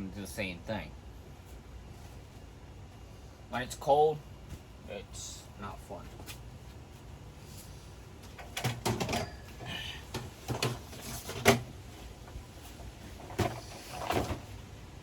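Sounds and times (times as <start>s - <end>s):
hard objects knocking and clattering: 8.5s - 9.4s, 10.1s - 11.7s.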